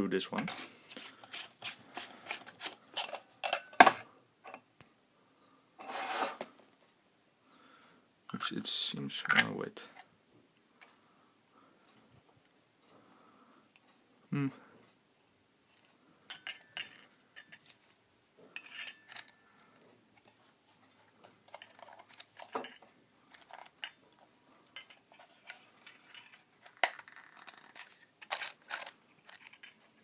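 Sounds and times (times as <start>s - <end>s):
short scrapes of parts: 0.5s - 3.3s, 5.8s - 6.6s.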